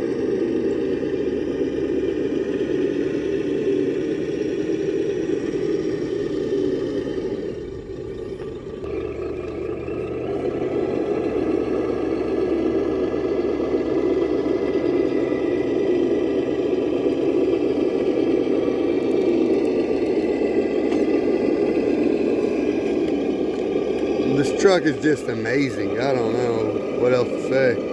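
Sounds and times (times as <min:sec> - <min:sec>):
electric toy truck motor whirring: 0:00.0 - 0:27.9.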